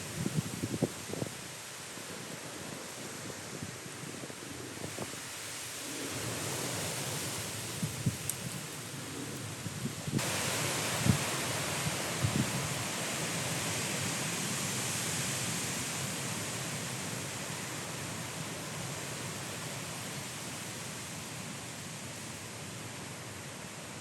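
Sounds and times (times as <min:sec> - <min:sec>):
wind buffeting microphone: 0:00.0 - 0:01.4, 0:07.4 - 0:13.0
strong gusty wind: 0:00.0 - 0:20.7.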